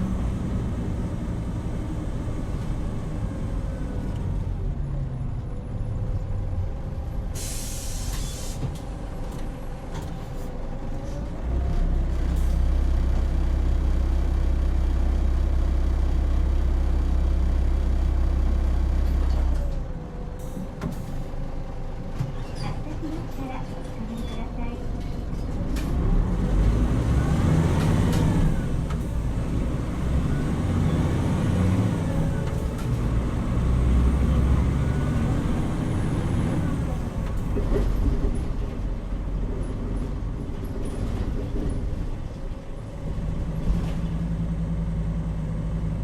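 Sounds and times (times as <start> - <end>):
bus diesel engine droning: 0.0 - 46.0
air brake hiss: 7.4 - 8.7.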